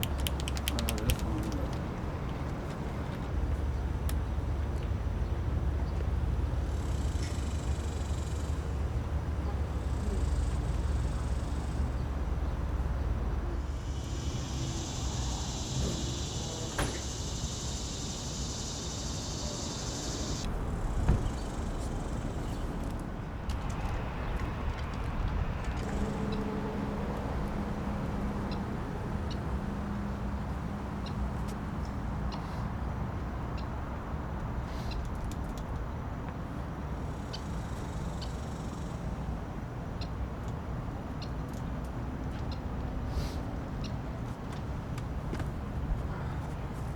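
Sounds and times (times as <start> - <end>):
traffic rumble: 0.0 - 46.9
high hiss or buzz: 13.6 - 21.4.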